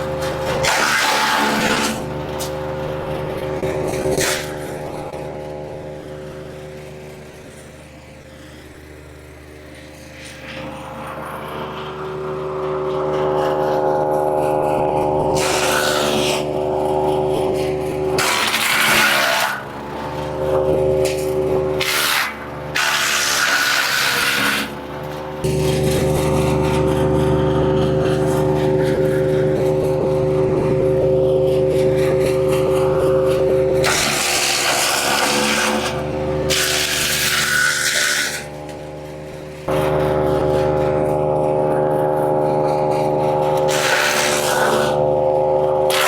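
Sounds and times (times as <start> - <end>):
wood chipper engine running: 0.0 - 46.0
branches being chipped: 21.0 - 41.4, 42.3 - 46.0.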